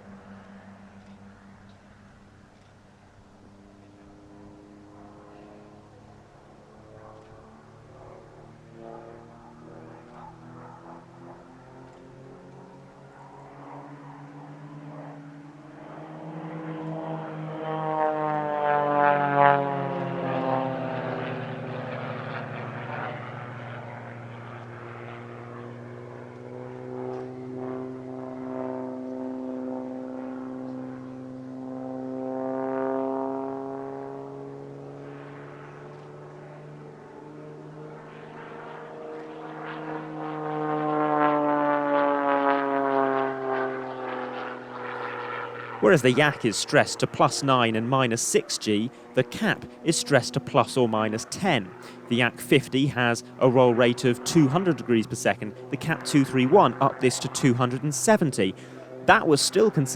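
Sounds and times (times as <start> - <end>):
propeller planes flying past: 0.0 - 59.9.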